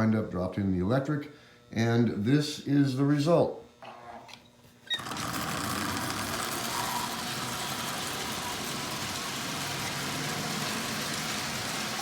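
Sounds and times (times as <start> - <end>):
toy locomotive running on track: 4.9 - 12.0.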